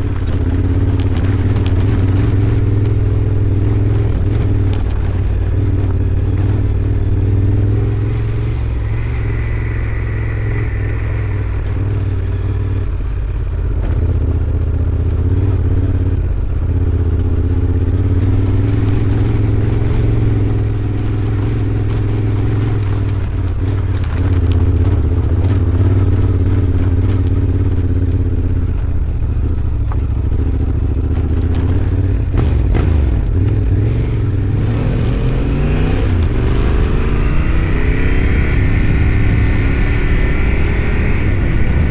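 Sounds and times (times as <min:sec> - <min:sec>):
motorcycle engine running: 0:00.0 - 0:41.9.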